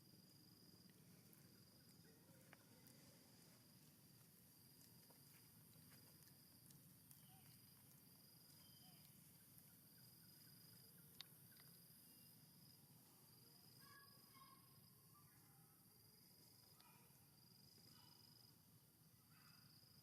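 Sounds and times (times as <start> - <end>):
insect trilling: 5.0 - 15.0.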